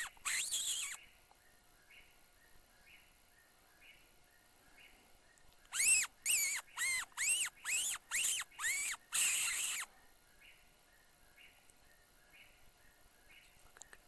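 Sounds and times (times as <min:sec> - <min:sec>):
predator call squeals: 0:00.0 - 0:01.0, 0:05.7 - 0:09.9
faint repeating chirps: 0:05.6 - 0:09.9.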